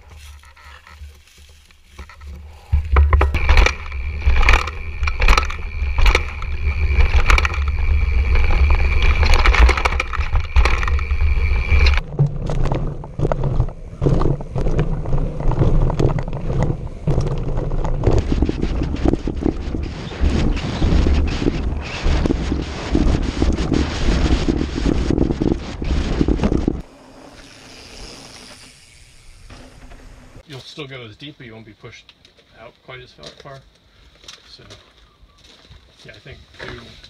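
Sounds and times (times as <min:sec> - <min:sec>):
bike tyre noise: 0:00.0 - 0:30.6
wind rumbling on microphone: 0:01.2 - 0:26.9
sharp knocks and rattles: 0:01.9 - 0:26.8
steady high whine: 0:02.0 - 0:30.4.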